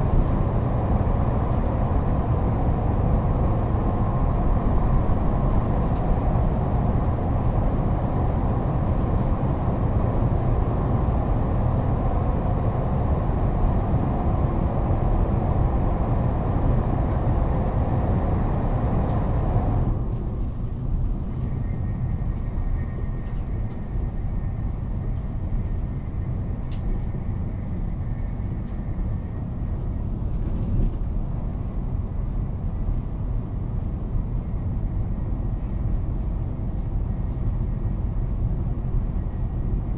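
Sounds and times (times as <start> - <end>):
higher-pitched train running noise: 0.0 - 31.0
faint steady whine: 0.0 - 39.9
train low rumble: 0.0 - 39.9.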